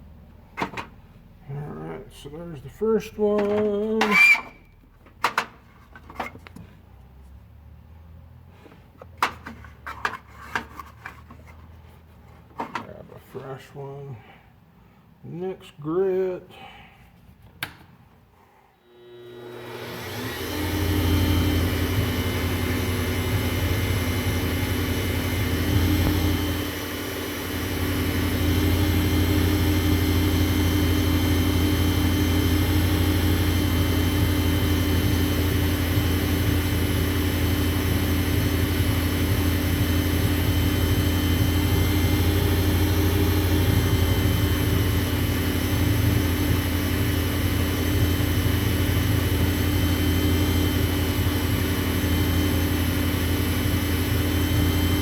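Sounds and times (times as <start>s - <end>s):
wood lathe motor humming: 18.9s - 55.0s.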